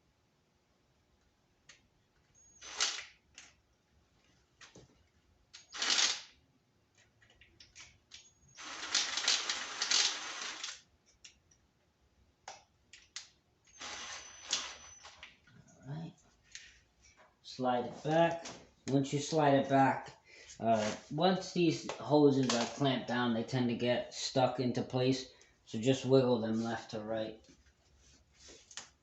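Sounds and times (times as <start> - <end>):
ratchet clicking: 5.6 - 6.3, 8.6 - 10.8.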